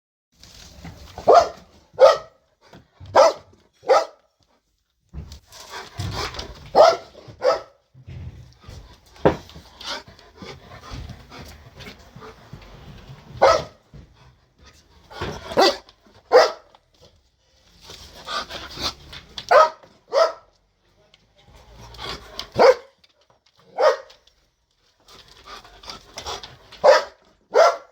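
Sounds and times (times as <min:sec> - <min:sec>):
dog barking loudly: 0:01.2 - 0:02.4, 0:03.0 - 0:04.2, 0:06.6 - 0:07.8, 0:13.4 - 0:13.8, 0:15.2 - 0:16.8, 0:19.4 - 0:20.6, 0:22.4 - 0:23.0, 0:23.6 - 0:24.2, 0:26.7 - 0:27.9.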